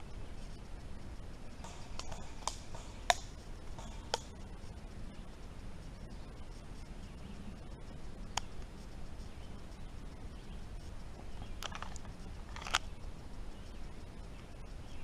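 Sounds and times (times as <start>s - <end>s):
low rumble: 0.0s - 15.0s
sharp clicks: 1.6s - 4.5s.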